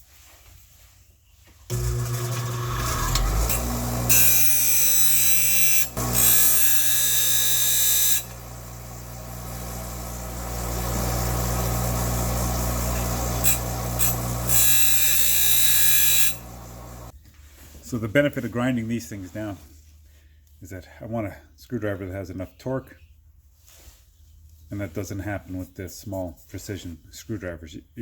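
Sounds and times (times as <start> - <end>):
electric grinder motor: 1.7 - 17.1
metal grinding on wheel: 1.7 - 17.1.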